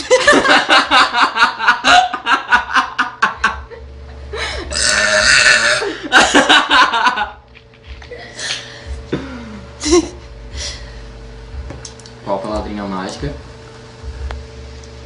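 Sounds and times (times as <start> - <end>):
girl belching: 4.7 - 5.9.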